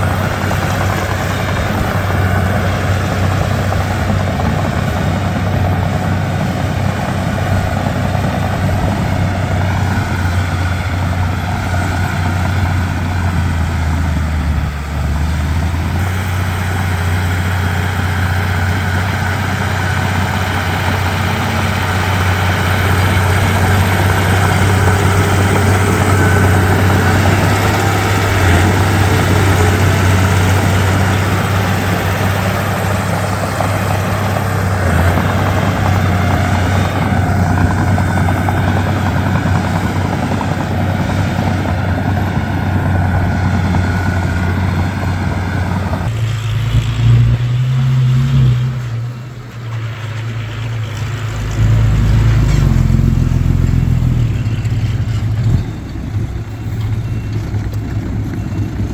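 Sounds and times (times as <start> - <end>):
bulldozer diesel engine droning: 0.0 - 58.9.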